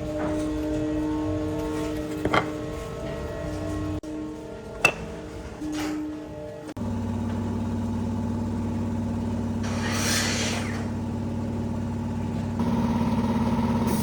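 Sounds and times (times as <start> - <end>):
hissing rush: 9.6 - 10.9.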